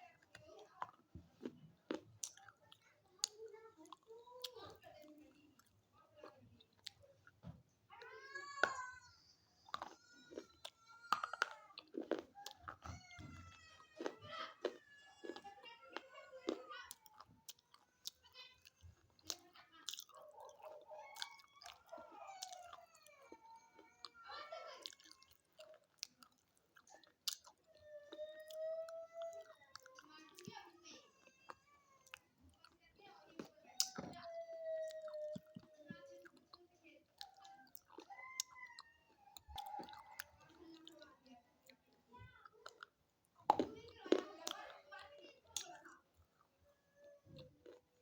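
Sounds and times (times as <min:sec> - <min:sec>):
chalky stick being chewed: 0:00.1 - 0:07.4, 0:09.6 - 0:24.2, 0:24.8 - 0:46.6, 0:47.2 - 0:48.0.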